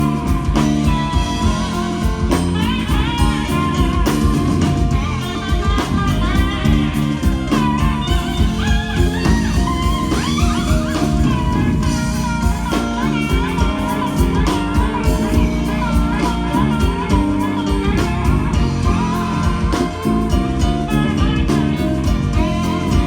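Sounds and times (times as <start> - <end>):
bass and drums: 0.0 - 23.0
electric guitar lead bending notes: 0.0 - 23.0.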